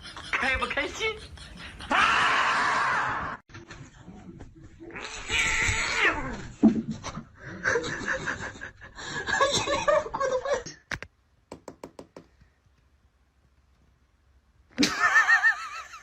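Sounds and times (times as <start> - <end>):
person laughing: 14.8 - 16.0.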